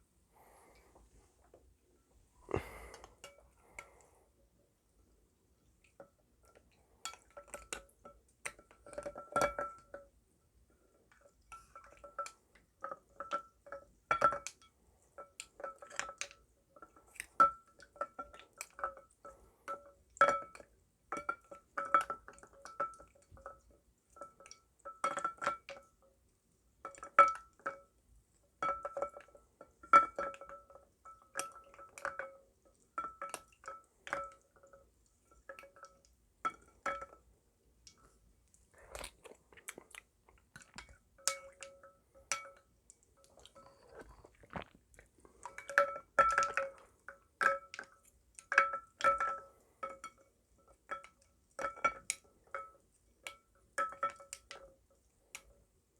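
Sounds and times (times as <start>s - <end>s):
glass clinking and ringing: 45.5s - 46.8s, 47.4s - 50.2s.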